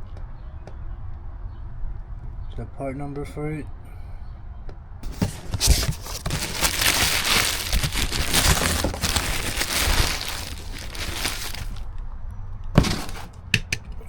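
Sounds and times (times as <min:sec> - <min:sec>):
plastic packaging crinkling: 0:05.0 - 0:11.9, 0:12.8 - 0:13.8.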